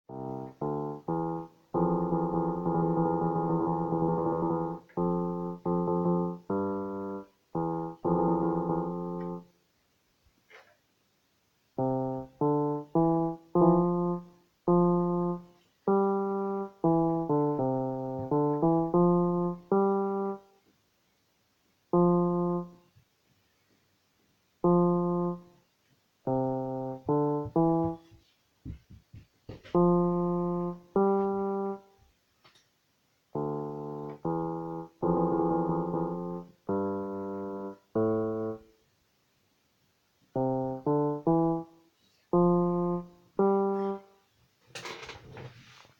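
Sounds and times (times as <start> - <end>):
electronic keyboard notes: 0.1 - 9.5, 11.8 - 20.5, 21.9 - 22.9, 24.6 - 25.6, 26.3 - 28.2, 29.6 - 31.9, 33.4 - 38.7, 40.4 - 44.1.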